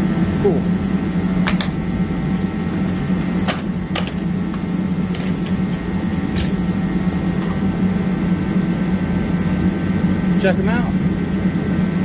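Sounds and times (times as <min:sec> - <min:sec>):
space heater humming: 0:00.0 - 0:12.0.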